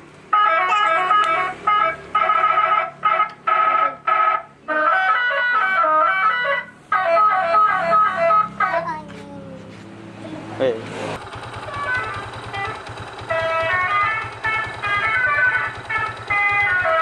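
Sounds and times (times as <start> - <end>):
multi-note horn honks: 0.3 - 8.8, 11.7 - 17.0.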